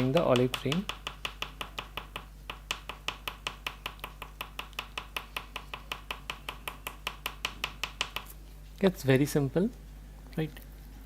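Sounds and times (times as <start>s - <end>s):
pastel tapping on paper: 0.0s - 8.4s.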